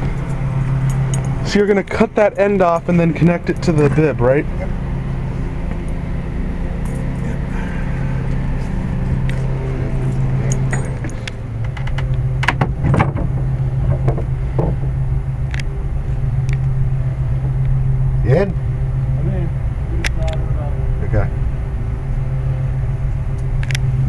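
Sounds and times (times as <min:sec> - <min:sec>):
low mechanical hum: 0:00.0 - 0:24.0.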